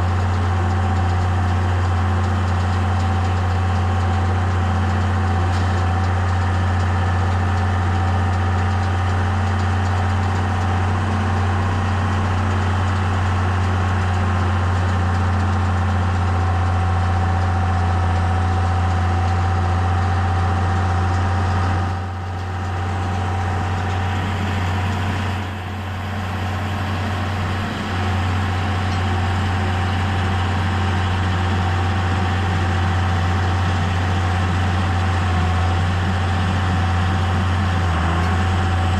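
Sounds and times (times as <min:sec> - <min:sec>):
tractor engine droning: 0:00.0 - 0:38.9.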